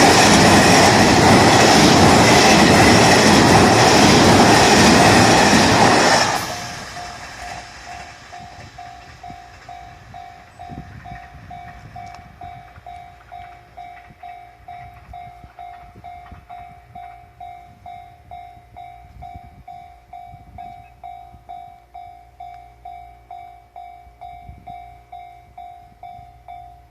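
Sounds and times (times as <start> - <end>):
loud train noise: 0.0 - 26.9
level crossing warning bell: 6.5 - 26.9.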